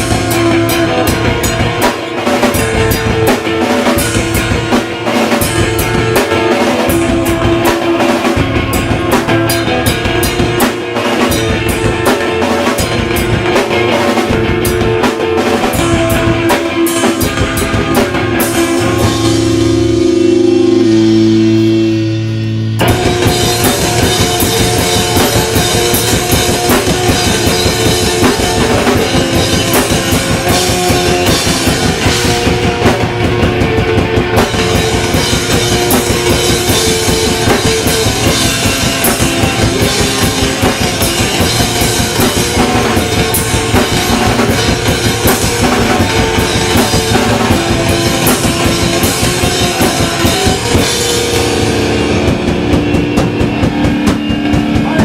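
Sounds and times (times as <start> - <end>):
distorted electric guitars: 0.0 - 55.0
fast loud drum kit: 0.0 - 55.0
live hardcore band playing: 0.0 - 55.0.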